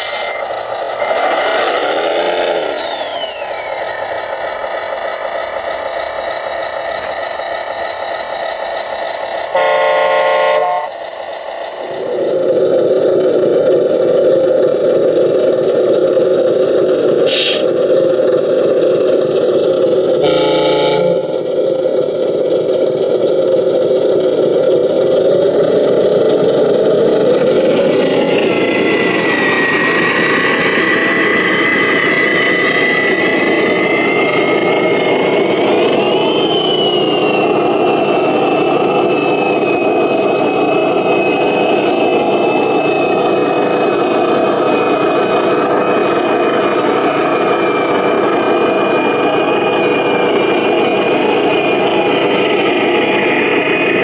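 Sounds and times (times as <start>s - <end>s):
model truck engine drone: 0.0s - 54.0s
horn blasts: 9.5s - 11.0s, 20.2s - 21.6s.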